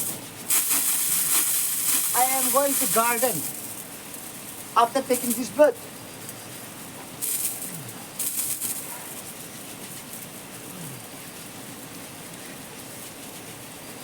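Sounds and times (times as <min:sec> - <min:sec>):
running water rushing: 0:00.0 - 0:03.8.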